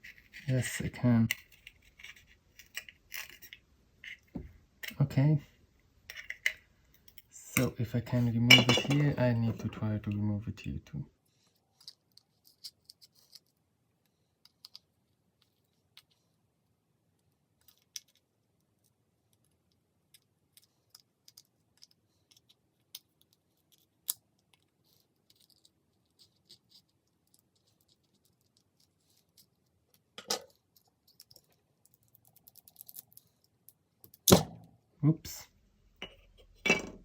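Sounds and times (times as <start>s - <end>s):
small clicks and scrapes: 0.0s - 5.1s, 6.1s - 7.3s, 11.4s - 16.4s, 17.2s - 34.3s.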